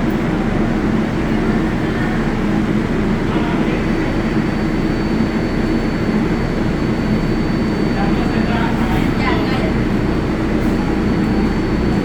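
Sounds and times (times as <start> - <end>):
subway train rumbling hum: 0.0 - 12.0.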